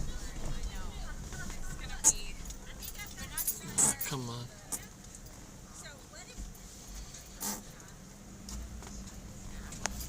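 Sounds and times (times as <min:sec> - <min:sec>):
low car cabin hum: 0:00.0 - 0:10.0.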